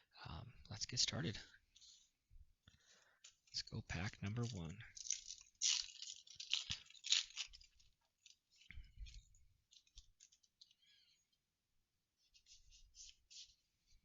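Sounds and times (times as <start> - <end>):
foil pack crinkling: 3.0 - 11.1.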